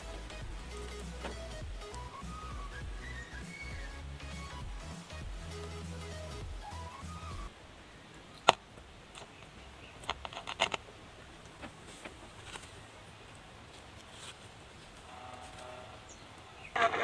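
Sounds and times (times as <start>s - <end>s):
small clicks and knocks: 8.4s - 12.8s.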